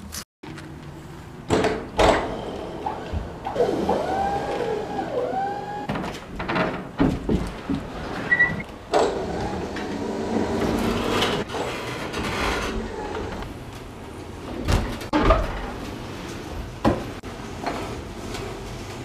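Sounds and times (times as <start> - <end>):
sharp knocks and thuds: 5.9 - 7.9.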